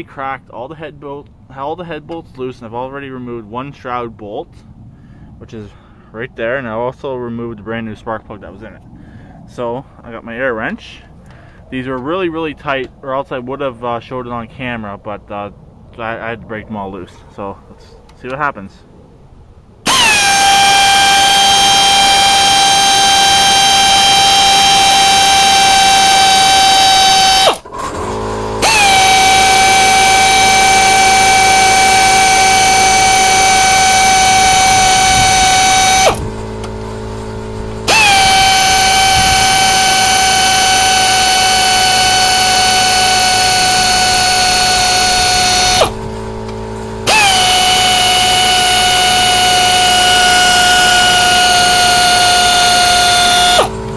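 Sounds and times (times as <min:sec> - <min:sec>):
low hum: 0:00.0 - 0:53.9
air wrench whining: 0:19.9 - 0:53.9.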